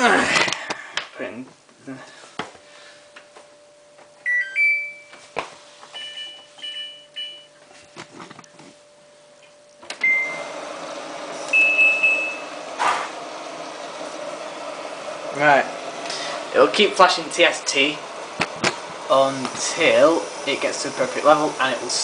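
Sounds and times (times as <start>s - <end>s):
washing machine beeping: 4.2s - 5.3s, 5.9s - 7.7s, 9.9s - 12.8s
water filling rushing: 13.2s - 22.0s.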